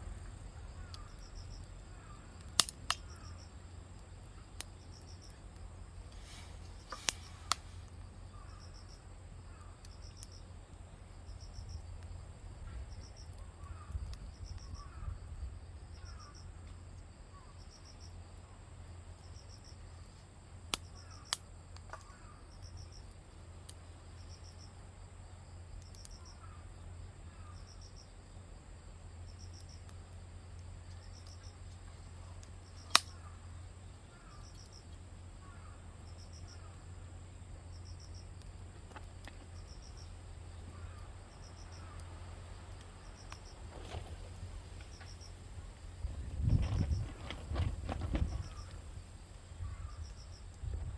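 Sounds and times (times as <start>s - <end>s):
insect chirps: 0.0s - 50.9s
high insect buzz: 43.0s - 50.5s.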